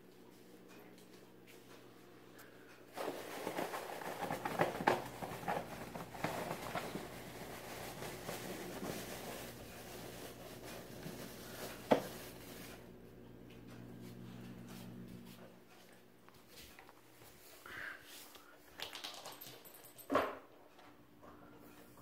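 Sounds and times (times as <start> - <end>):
cat rustling and scuffling: 2.9 - 12.9.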